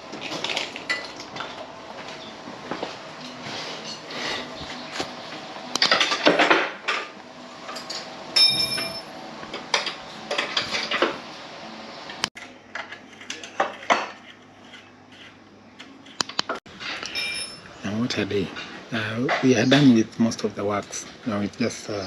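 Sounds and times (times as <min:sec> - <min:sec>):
metal tools clinking: 0:07.7 - 0:09.1, 0:16.8 - 0:17.7
ringing metallic note: 0:08.4 - 0:09.2.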